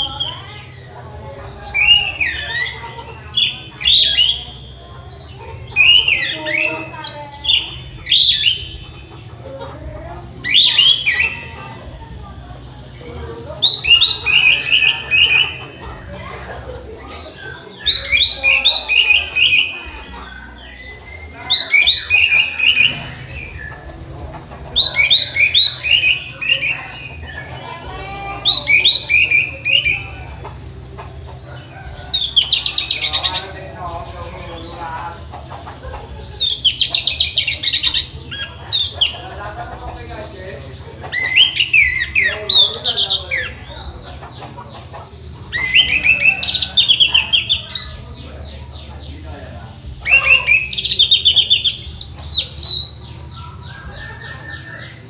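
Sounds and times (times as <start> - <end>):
thrush singing whistled notes: 1.7 - 4.8, 5.7 - 9.0, 10.4 - 11.6, 13.6 - 15.7, 17.3 - 24.0, 24.8 - 27.6
thrush singing whistles and trills: 1.7 - 9.2, 10.4 - 11.6, 13.6 - 15.8, 17.2 - 24.1, 24.7 - 27.6, 28.4 - 30.4, 31.4 - 33.6, 41.0 - 55.0.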